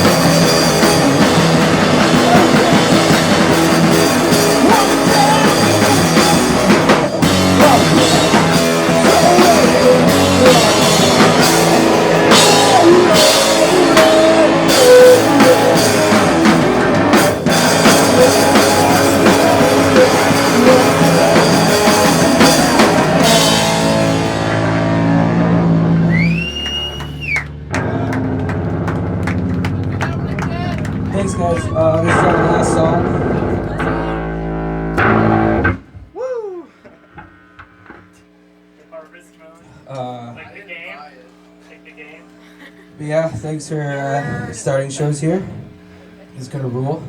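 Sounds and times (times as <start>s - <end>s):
drum kit with cymbal crashes: 0.0s - 31.2s
distorted electric guitar: 0.0s - 36.1s, 37.0s - 38.7s.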